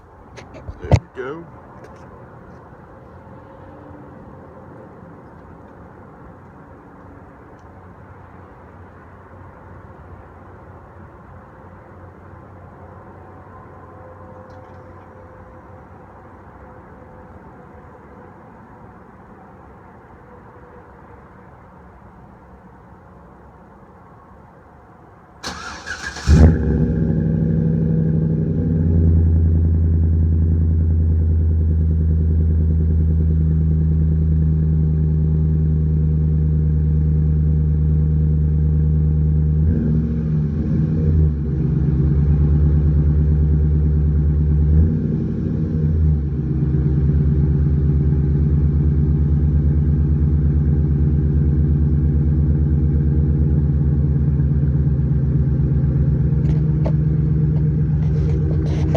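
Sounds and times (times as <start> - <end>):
engine cranking: 25.4 - 26.8, 56.4 - 58.9
engine idling: 25.4 - 37.8, 47.3 - 58.9.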